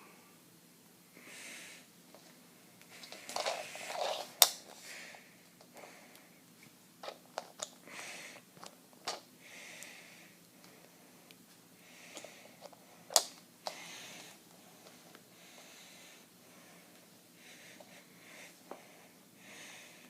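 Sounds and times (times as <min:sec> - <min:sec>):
soft breaths: 0:01.1 - 0:20.0
rustling: 0:02.1 - 0:05.9.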